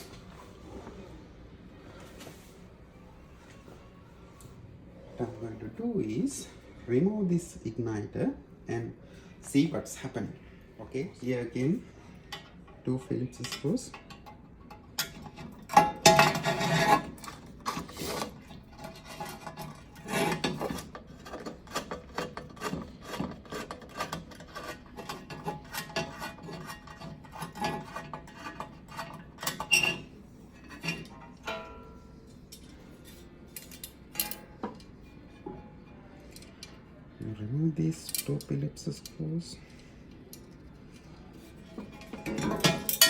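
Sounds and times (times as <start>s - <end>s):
rasping metal rubs: 16.2s - 30.0s.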